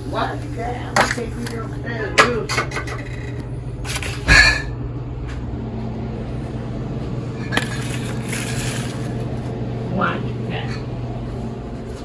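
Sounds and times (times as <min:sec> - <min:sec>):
steady low hum: 0:00.0 - 0:12.0
cookware clattering: 0:00.9 - 0:03.4.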